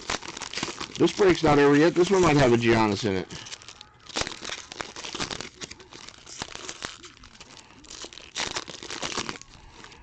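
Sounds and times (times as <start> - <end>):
plastic wrappers torn and crinkled: 0.0 - 10.0.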